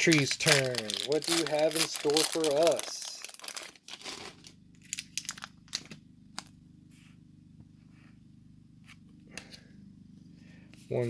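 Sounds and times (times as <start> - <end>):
foil wrapper tearing and crinkling: 0.0 - 5.9
faint steady hum: 0.0 - 11.0.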